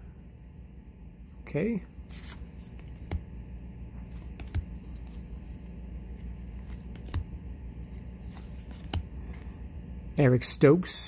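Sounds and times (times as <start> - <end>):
steady low hum: 0.0 - 11.0
cards being flipped: 1.9 - 9.6.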